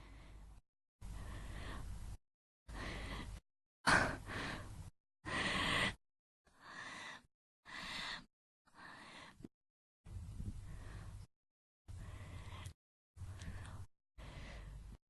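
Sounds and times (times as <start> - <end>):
woman breathing and sighing: 2.7 - 9.5.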